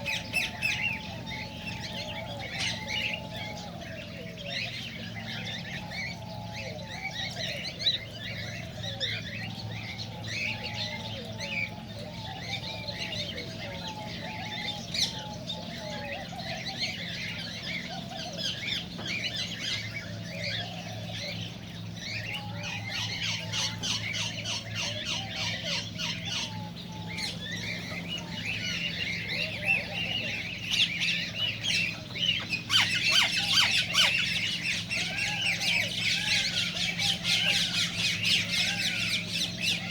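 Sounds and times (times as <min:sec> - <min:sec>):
cockatiels chattering: 0:00.0 - 0:39.9
steady low hum: 0:00.0 - 0:39.9
harsh bird squawks: 0:22.4 - 0:39.9.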